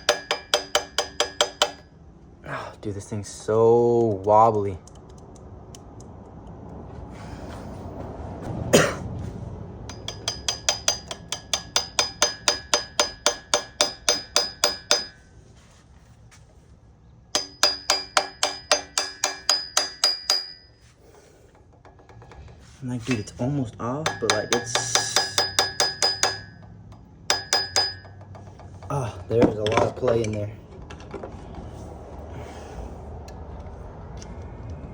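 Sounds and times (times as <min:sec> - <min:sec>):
hammer tapping on metal: 0:00.0 - 0:01.9, 0:09.8 - 0:15.2, 0:17.4 - 0:20.8, 0:24.0 - 0:30.4.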